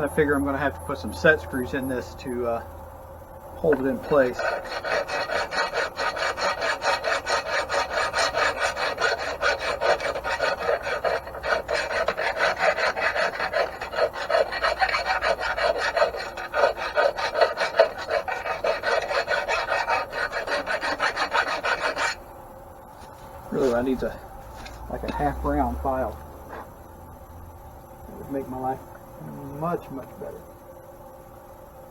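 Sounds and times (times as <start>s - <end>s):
hand file scraping metal: 3.6s - 22.2s.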